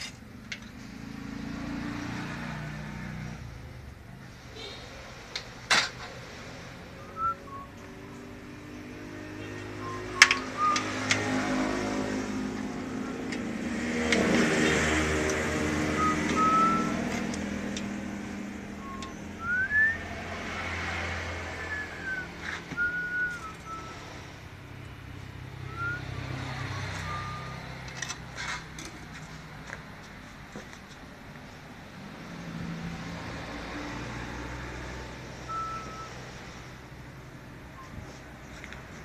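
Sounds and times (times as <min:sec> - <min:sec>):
high chirps or squeaks: 0:15.8 - 0:17.3, 0:25.7 - 0:27.7.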